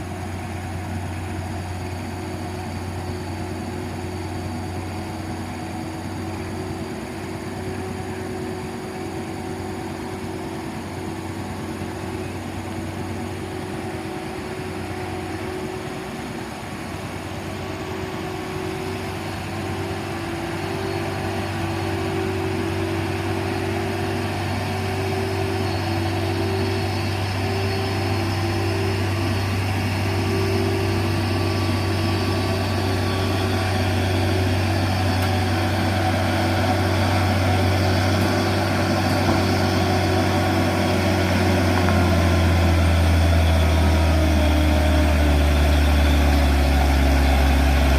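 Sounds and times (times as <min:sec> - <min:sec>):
diesel truck engine droning: 0:00.0 - 0:47.9.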